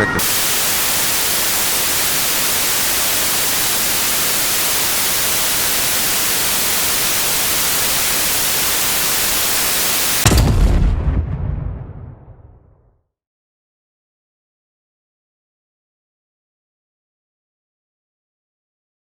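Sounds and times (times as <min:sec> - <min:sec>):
loud static hiss: 0:00.0 - 0:10.3
deep explosion boom: 0:10.2 - 0:12.9.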